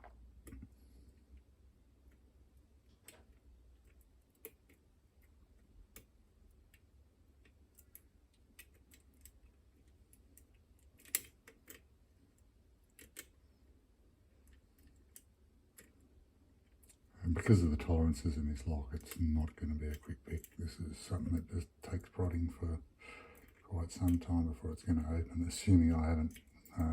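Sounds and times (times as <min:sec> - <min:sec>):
lock pick clicking: 0:11.0 - 0:11.8.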